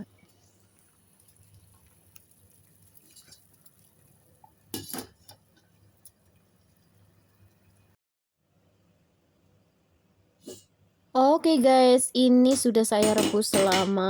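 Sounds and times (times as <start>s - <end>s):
cookware clatter: 4.7s - 5.4s, 12.5s - 14.0s
metal cookware clinking: 4.7s - 5.4s, 12.5s - 14.0s.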